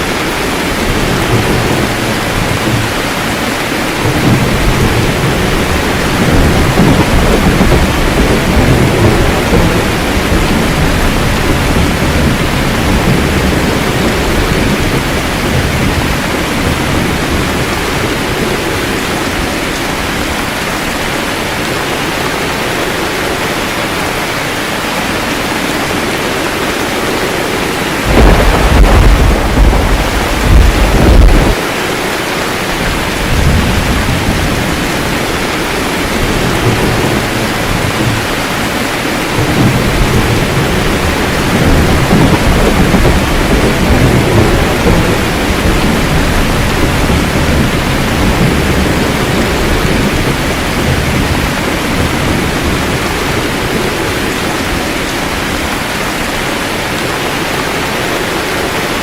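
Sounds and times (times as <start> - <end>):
loud thunderclap: 0.0 - 19.1, 27.8 - 32.0, 32.8 - 54.4
thunder rolling: 0.0 - 20.5, 25.5 - 55.4
steady rain: 0.0 - 59.0.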